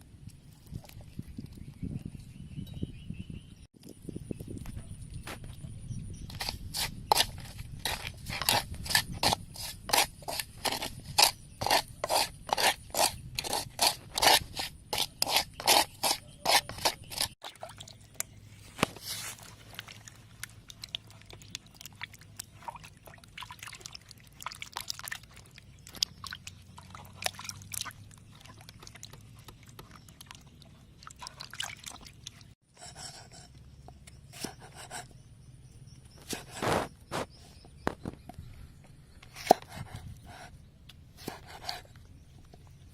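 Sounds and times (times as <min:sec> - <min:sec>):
hand scraping: 0:06.3 - 0:17.4, 0:36.2 - 0:38.0.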